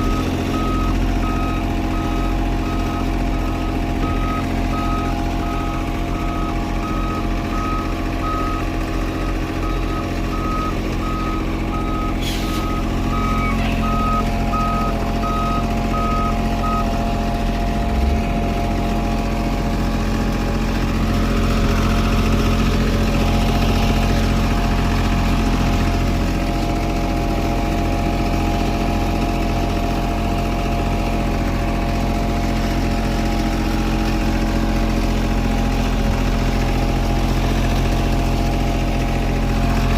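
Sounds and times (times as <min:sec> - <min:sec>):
diesel engine running: 0:00.0 - 0:39.9
backup alarm beeping: 0:09.6 - 0:17.0.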